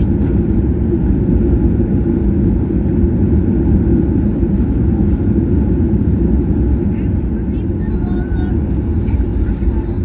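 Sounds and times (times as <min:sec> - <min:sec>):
airliner cabin engine rumble: 0:00.0 - 0:10.0.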